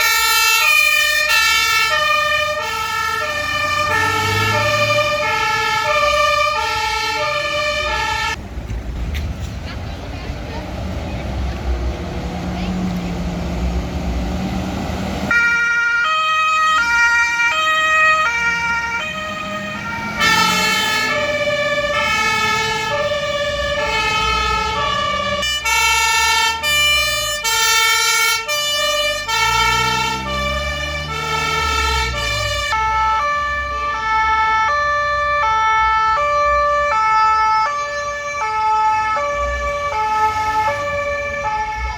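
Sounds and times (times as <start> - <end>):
two-tone fire engine sirens: 0.0 - 8.4, 10.3 - 41.9
vehicle low rumble: 1.9 - 15.4.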